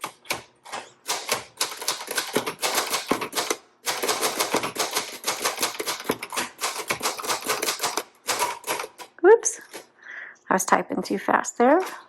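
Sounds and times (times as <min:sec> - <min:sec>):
typewriter key strikes: 0:01.1 - 0:09.0.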